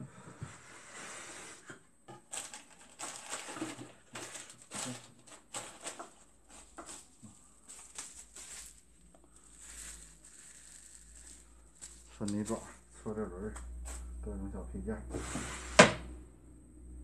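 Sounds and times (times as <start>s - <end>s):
small parts clattering in a box: 2.2s - 12.7s.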